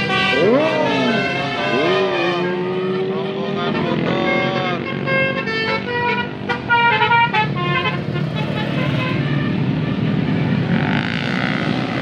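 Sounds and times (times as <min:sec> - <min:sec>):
musical air horns: 0:00.0 - 0:03.2
traffic: 0:00.0 - 0:12.0
bus engine rumble: 0:06.4 - 0:09.4.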